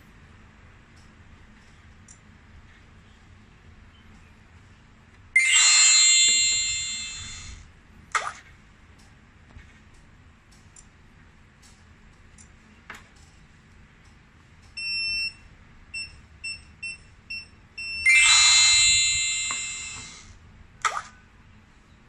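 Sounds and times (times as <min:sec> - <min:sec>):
alarm panel beeping: 0:05.4 - 0:07.6, 0:17.8 - 0:20.2
loud ringing chime: 0:05.4 - 0:07.6, 0:18.0 - 0:20.3.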